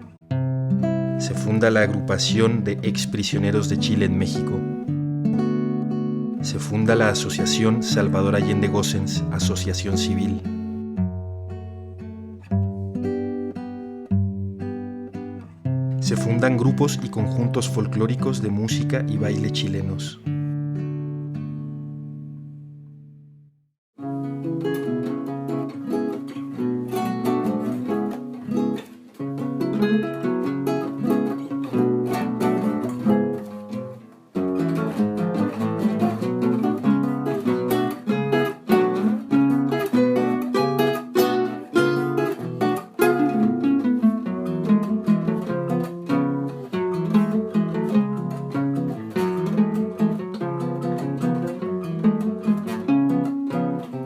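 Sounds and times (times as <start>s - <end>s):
plucked string music: 0.0s - 23.4s, 24.0s - 54.0s.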